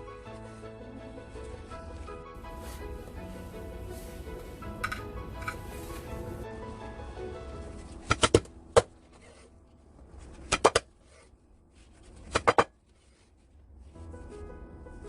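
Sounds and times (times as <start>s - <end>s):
background music: 0.0s - 10.8s, 13.9s - 15.0s.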